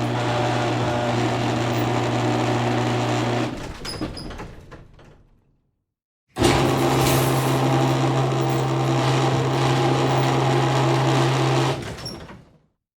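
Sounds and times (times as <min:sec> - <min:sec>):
garage door opener motor humming: 0:00.0 - 0:03.7, 0:06.4 - 0:12.2.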